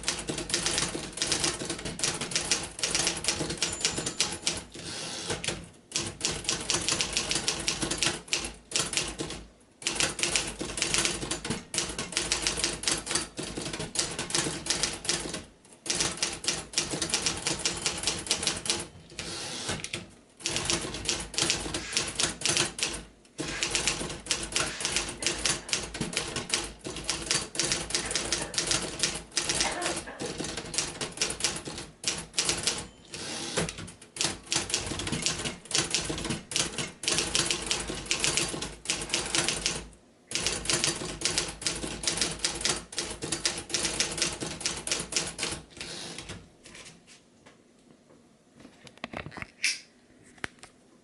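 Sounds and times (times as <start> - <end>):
manual typewriter keystrokes: 0.0 - 46.4.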